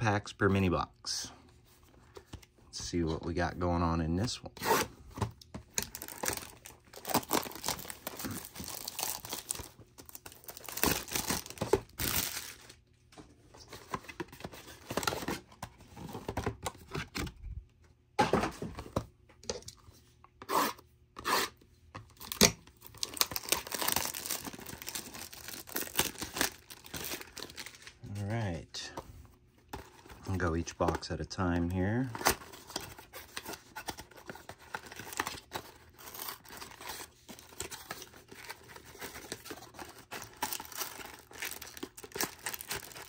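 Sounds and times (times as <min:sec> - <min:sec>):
packaging tearing and crinkling: 0:05.8 - 0:12.8, 0:22.2 - 0:28.0, 0:32.0 - 0:43.0.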